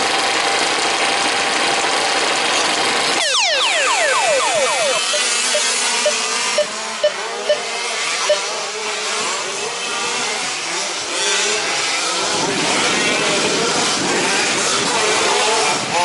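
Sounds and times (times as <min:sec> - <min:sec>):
small engines revving: 0:00.0 - 0:16.0
sharp engine blips: 0:03.2 - 0:08.6.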